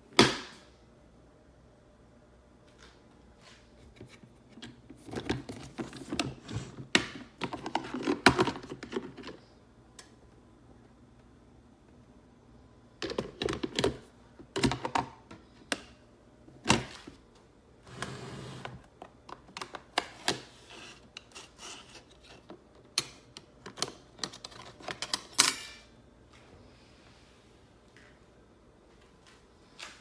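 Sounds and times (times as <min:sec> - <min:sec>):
coffee maker parts clicking and rattling: 0:04.0 - 0:09.4, 0:13.0 - 0:15.2, 0:22.1 - 0:25.8.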